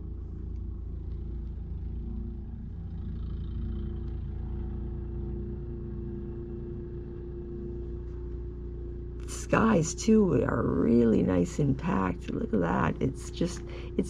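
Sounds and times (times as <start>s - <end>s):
snowblower engine running: 0.0s - 9.3s.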